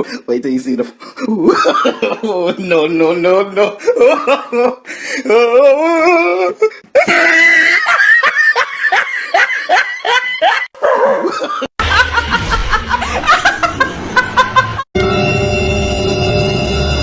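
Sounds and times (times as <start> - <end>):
person laughing hard: 1.3 - 2.5, 3.6 - 14.9
low rumble: 11.8 - 14.6
music: 15.0 - 17.0.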